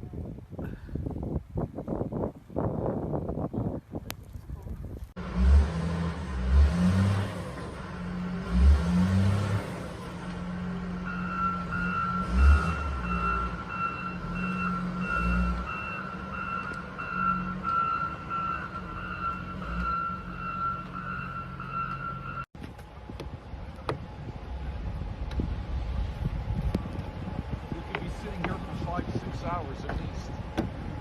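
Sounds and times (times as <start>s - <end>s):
low vehicle rumble: 0.0s - 31.0s
reversing beeper: 11.0s - 22.5s.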